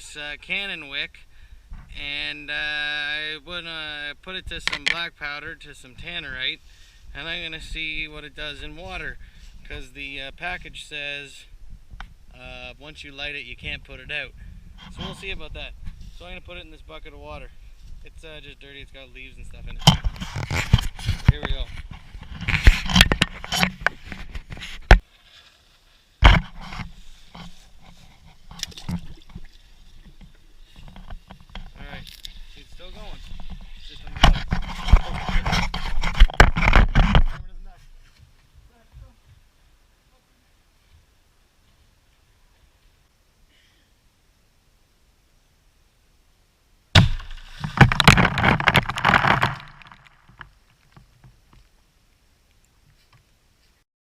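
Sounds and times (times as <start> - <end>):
quiet rustling: 13.3 - 43.1, 47.0 - 53.8
knocks and scrapes of handling: 14.8 - 16.3, 19.4 - 38.6, 47.0 - 51.7
water crackling and splashing: 27.0 - 32.6, 47.0 - 51.0
sharp knock: 47.0 - 48.3.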